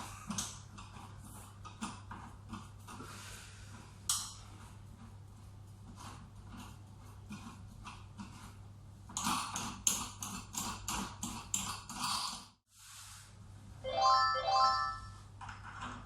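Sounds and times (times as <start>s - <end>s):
low electrical hum: 0.0s - 16.0s
melody of bright tones: 13.8s - 15.2s.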